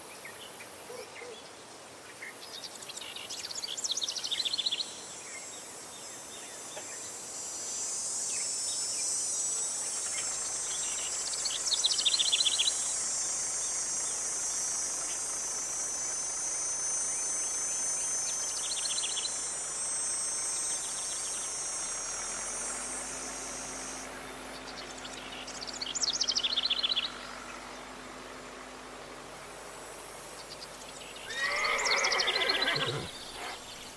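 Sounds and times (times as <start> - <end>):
high-pitched insect chorus: 0.0 - 33.9
bird trilled call: 31.2 - 33.9.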